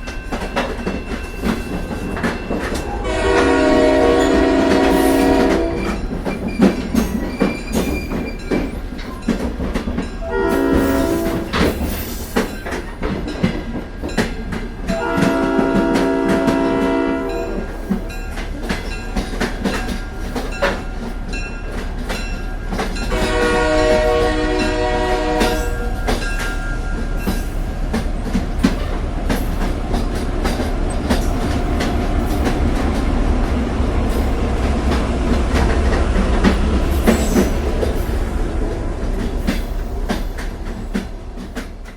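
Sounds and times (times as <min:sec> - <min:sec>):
train rumbling: 0:00.0 - 0:41.9
wheels clacking over rails: 0:00.0 - 0:41.9
train horn chord: 0:02.8 - 0:06.1, 0:10.2 - 0:11.7, 0:14.9 - 0:17.7, 0:23.1 - 0:26.2.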